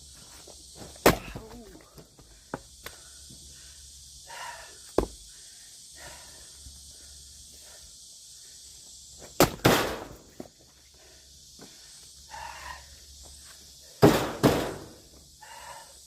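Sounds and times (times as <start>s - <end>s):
axe splitting firewood: 1.0s - 1.7s, 14.0s - 14.9s.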